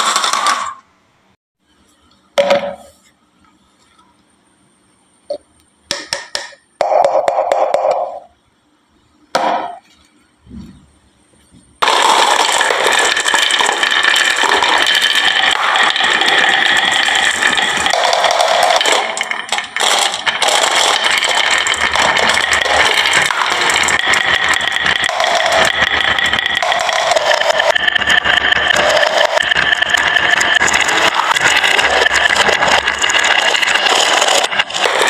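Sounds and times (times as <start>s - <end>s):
marbles rattling down wooden run: 0.0s - 0.8s, 11.8s - 35.0s.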